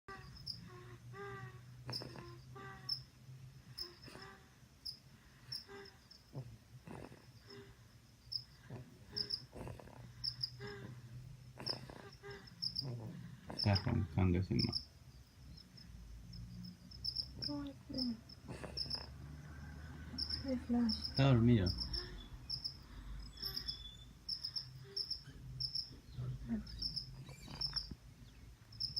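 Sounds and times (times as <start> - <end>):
faint high chirping: 0.1 - 6.4, 11.6 - 19.1, 19.8 - 28.9
person snoring softly: 0.5 - 2.5, 5.4 - 7.8, 8.4 - 11.0, 11.6 - 14.2.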